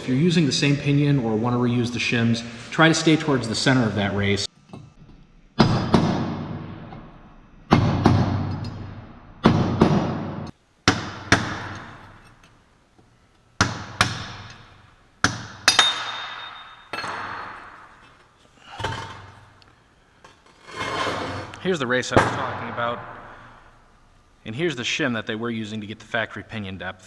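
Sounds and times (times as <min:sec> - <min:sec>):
hammer striking metal punch: 0:07.7 - 0:12.1, 0:13.6 - 0:17.8.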